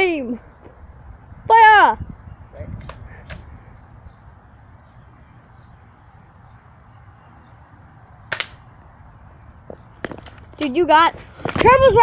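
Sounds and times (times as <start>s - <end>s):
low background noise: 0.0s - 12.0s
bb gun firing: 8.3s - 8.7s.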